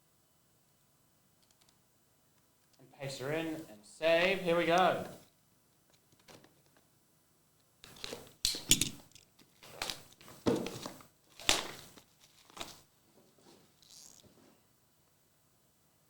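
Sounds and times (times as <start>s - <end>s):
cards and packaging rustling: 9.4s - 12.9s.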